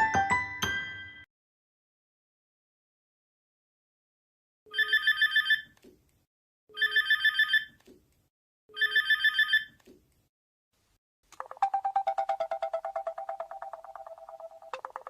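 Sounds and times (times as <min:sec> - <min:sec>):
electronic trill ringtone: 0:11.4 - 0:15.0
low pulsing ringtone: 0:11.4 - 0:15.0.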